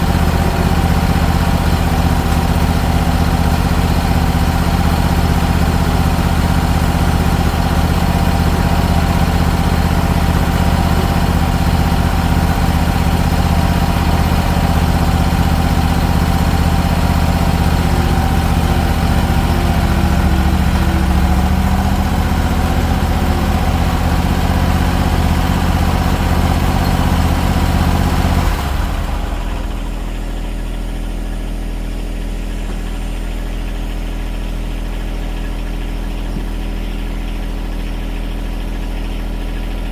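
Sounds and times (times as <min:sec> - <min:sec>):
lawn mower engine running: 0:00.0 - 0:39.9.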